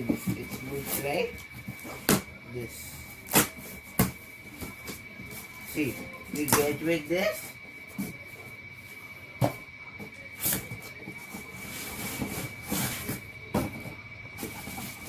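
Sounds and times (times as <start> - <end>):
faint high-pitched whine: 0.0 - 15.0
rubbing and scraping of packaging: 10.4 - 13.2.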